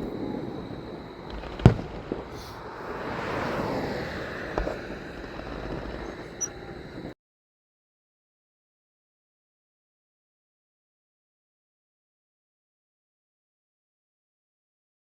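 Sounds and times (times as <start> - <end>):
firework bangs: 0.0 - 7.2
fireworks crackling: 0.0 - 7.2
firework pop: 1.2 - 2.7, 4.5 - 6.5.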